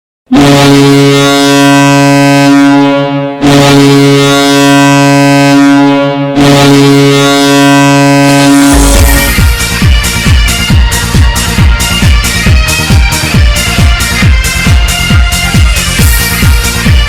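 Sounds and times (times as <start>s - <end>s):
deep goal horn blasts: 0.3s - 12.5s.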